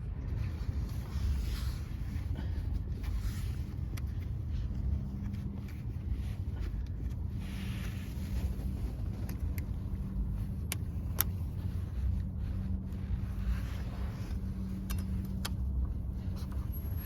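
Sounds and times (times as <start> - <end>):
car engine rumbling: 0.0 - 17.0.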